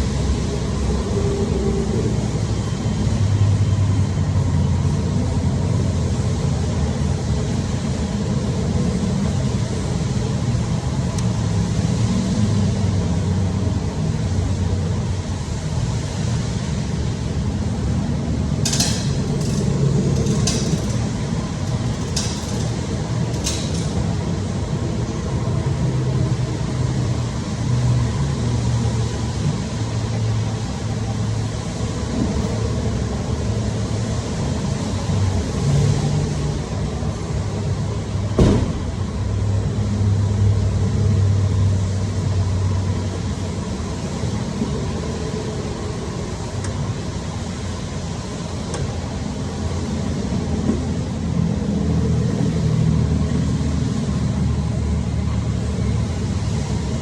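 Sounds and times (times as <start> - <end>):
low mechanical rumble: 0.0 - 57.0
sharp clinks: 18.7 - 24.2.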